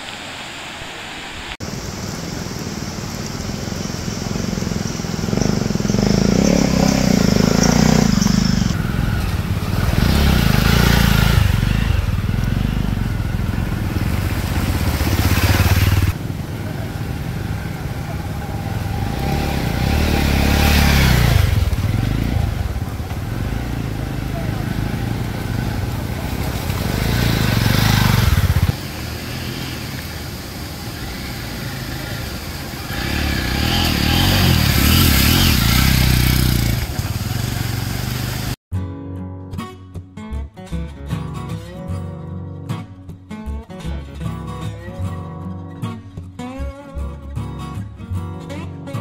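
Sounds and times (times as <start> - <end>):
motorcycle engine revving: 3.6 - 38.6.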